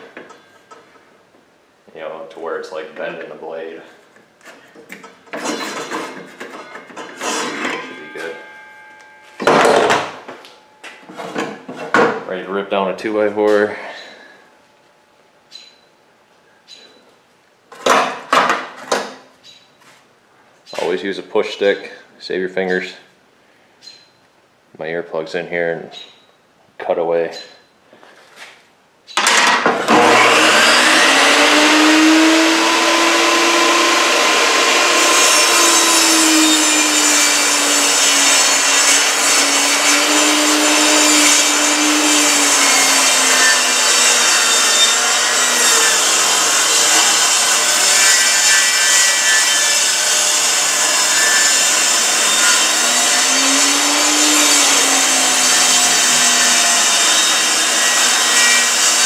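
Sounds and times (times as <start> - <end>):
table saw ripping wood: 5.2 - 10.2, 29.2 - 59.0.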